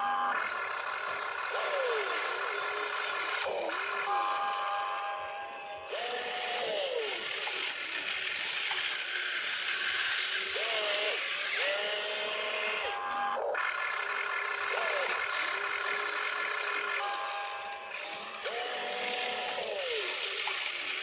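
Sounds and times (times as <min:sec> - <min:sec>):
motor whines rising in pitch: 0:00.0 - 0:21.0
toy motors whirring and rattling: 0:00.3 - 0:21.0.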